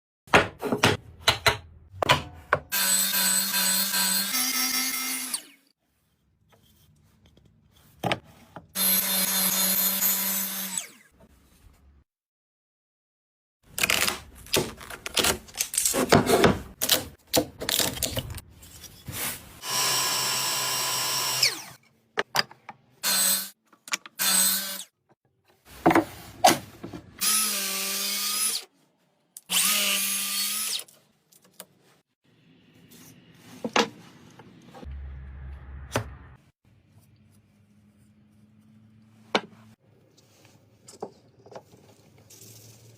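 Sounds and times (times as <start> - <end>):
power tool running: 19.6 - 21.8.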